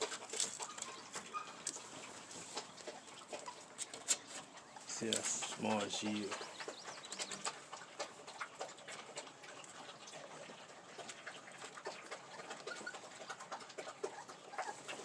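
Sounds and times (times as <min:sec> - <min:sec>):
puppies lapping and chewing food: 0:00.0 - 0:15.0
puppy squeaks: 0:00.6 - 0:01.7, 0:12.3 - 0:13.1, 0:14.0 - 0:15.0.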